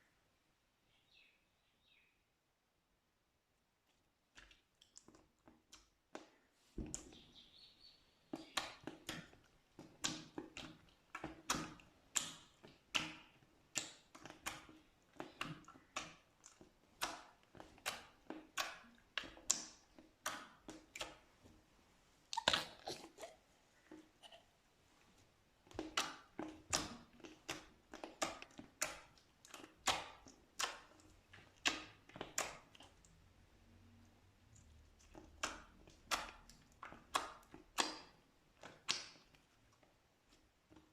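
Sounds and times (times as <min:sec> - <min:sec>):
slime squeezed by hand: 0:22.3 - 0:23.4.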